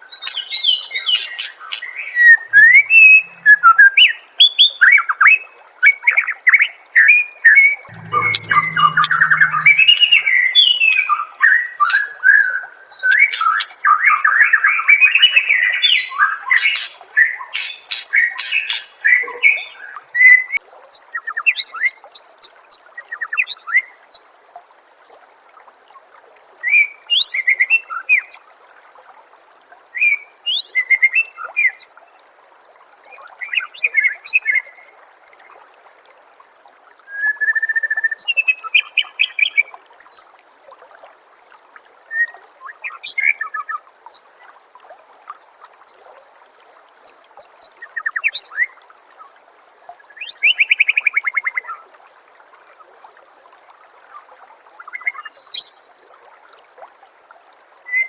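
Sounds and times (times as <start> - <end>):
bird singing whistled phrases: 0.6 - 4.2, 37.1 - 38.9, 42.1 - 43.6.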